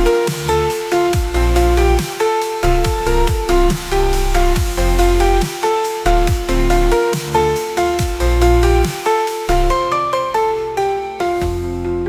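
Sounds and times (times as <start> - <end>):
deep pulsing bass: 0.0 - 2.0, 2.6 - 5.5, 6.1 - 8.9, 9.5 - 9.8
electronic synthesizer music: 0.0 - 12.0.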